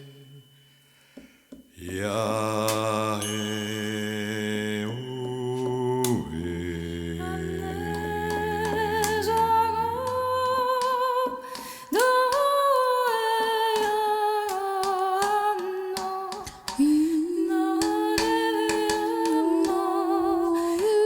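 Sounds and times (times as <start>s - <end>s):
wordless singing with vibrato: 0.0s - 0.9s, 1.6s - 21.0s
low drone: 4.4s - 11.0s.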